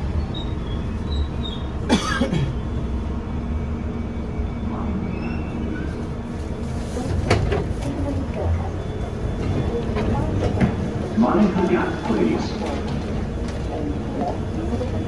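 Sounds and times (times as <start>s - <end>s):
train rumbling on track: 0.0s - 15.0s
falling squeal: 4.8s - 6.0s.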